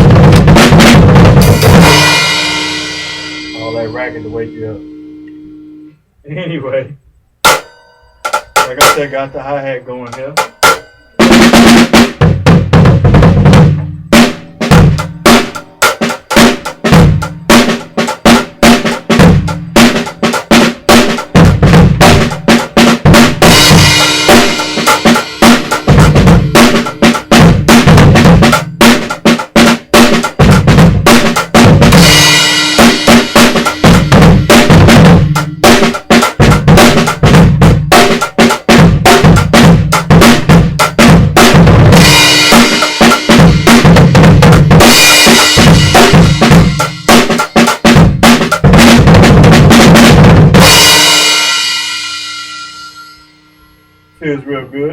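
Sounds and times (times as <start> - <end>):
drum kit playing groove: 0.0 - 5.9, 7.4 - 53.5
cymbal crashes: 1.4 - 5.9, 23.1 - 29.1, 31.5 - 36.8, 41.5 - 48.2, 50.6 - 54.2.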